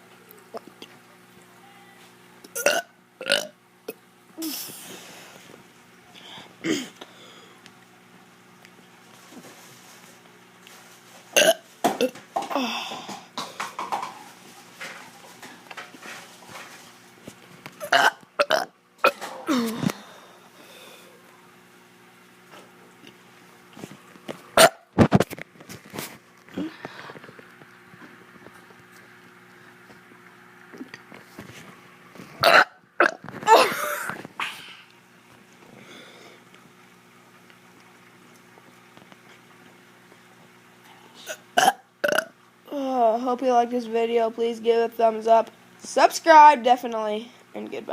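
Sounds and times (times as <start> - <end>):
child burping: 2.5 - 3.6, 6.6 - 7.0, 11.4 - 12.9, 17.8 - 19.9, 32.4 - 34.2, 41.3 - 42.3.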